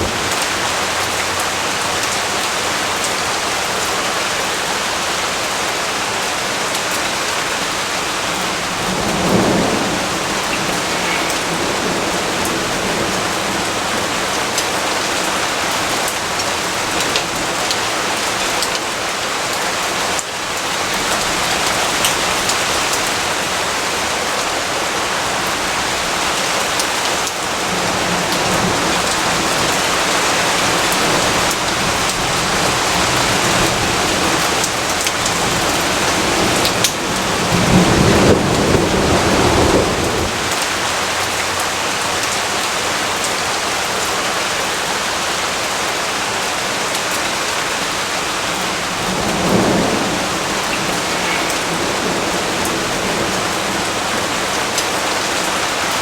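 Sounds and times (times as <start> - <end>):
thunder crack and rumble: 0.0 - 2.1, 8.1 - 18.9, 25.5 - 41.7, 48.4 - 55.3
heavy rainfall: 0.0 - 56.0.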